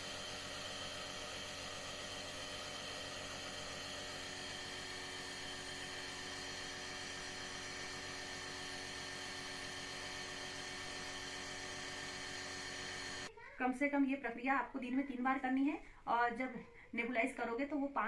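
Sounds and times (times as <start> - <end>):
nebulizer humming and hissing: 0.0 - 13.3.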